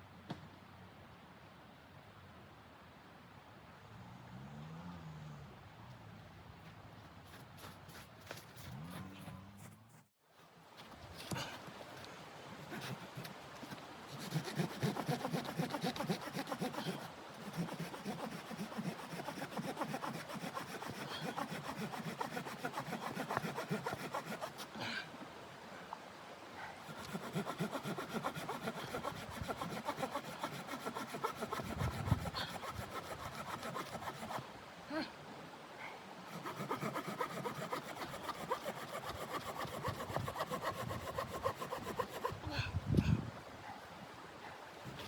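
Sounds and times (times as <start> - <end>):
hand saw cutting wood: 12.6 - 24.7, 26.8 - 34.5, 36.3 - 42.5.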